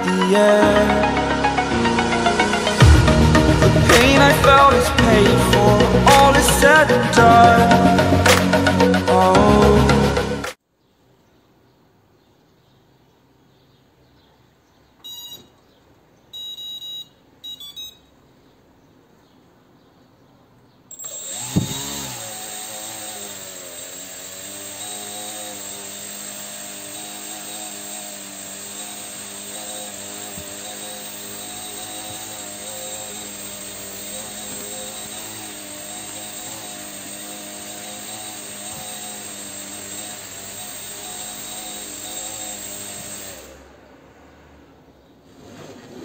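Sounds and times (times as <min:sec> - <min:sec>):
electric motor propeller whine: 0:01.0 - 0:06.1, 0:20.9 - 0:43.8.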